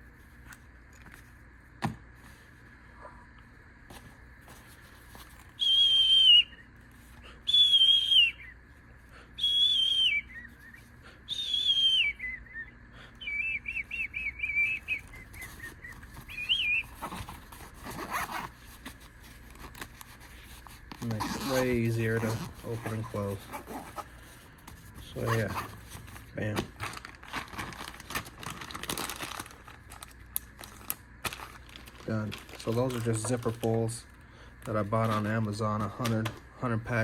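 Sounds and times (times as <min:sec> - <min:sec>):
person whistling: 0:05.6 - 0:08.6, 0:09.4 - 0:17.0.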